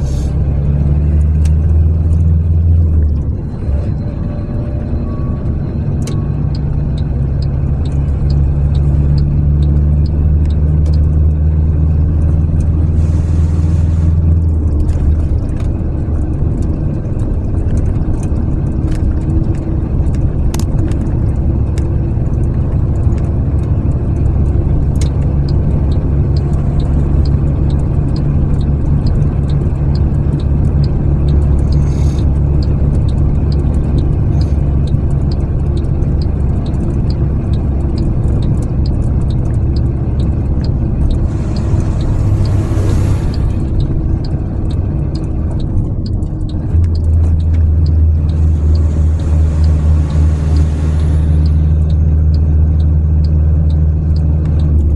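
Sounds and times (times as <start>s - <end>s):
car engine and tyre rumble: 0.0s - 54.9s
faint ticking: 22.3s - 54.9s.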